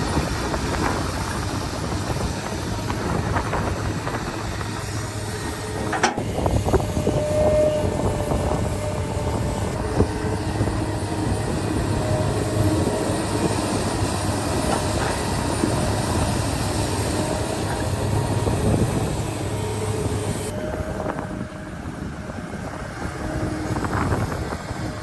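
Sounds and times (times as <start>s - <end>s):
diesel machinery engine drone: 0.0s - 25.0s.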